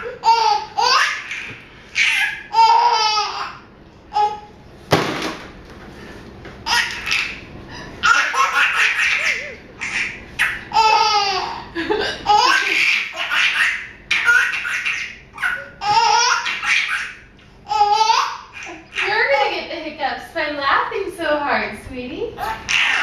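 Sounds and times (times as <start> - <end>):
baby laughing: 0.0 - 4.5, 6.6 - 19.5, 22.4 - 23.0.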